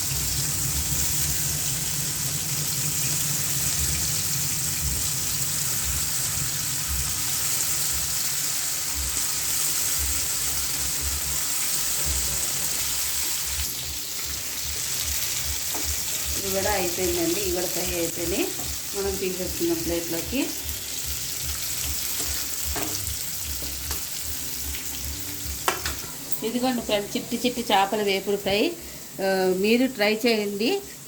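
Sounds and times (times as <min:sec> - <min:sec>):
fish sizzling in hot oil: 0:00.0 - 0:31.0.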